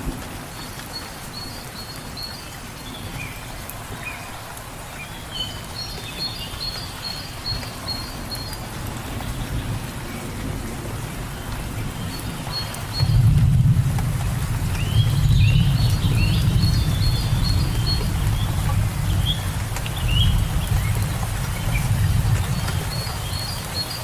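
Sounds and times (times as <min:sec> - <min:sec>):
steady rain in forest: 0:00.0 - 0:24.0
bird chirping: 0:14.8 - 0:21.9.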